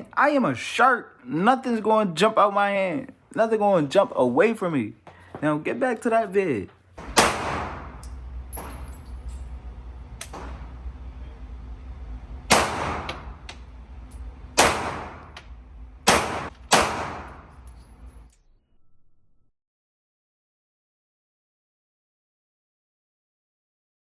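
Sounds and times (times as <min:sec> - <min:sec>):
steady low hum: 0:06.8 - 0:18.4
pistol shots echoing indoors: 0:07.0 - 0:09.2, 0:12.4 - 0:17.8.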